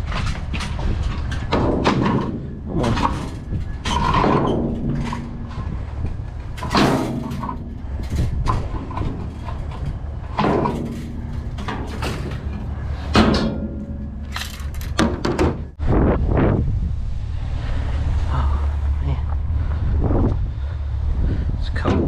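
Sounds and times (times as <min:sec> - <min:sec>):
trash banging in metal dumpster: 0:00.0 - 0:15.8
steady low rumble: 0:00.0 - 0:22.0.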